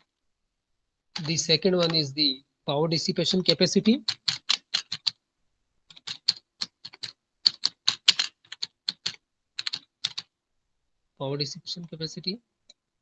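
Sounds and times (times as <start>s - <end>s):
typing clicks and taps: 1.2s - 2.0s, 4.1s - 5.2s, 5.9s - 10.3s.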